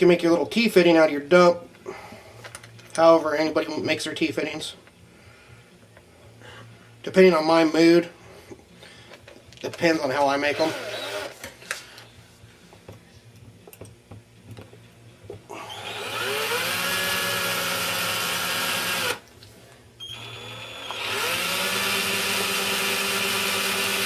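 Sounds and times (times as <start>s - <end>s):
small electric drill boring metal: 10.5s - 11.4s, 15.6s - 19.2s, 20.1s - 24.0s.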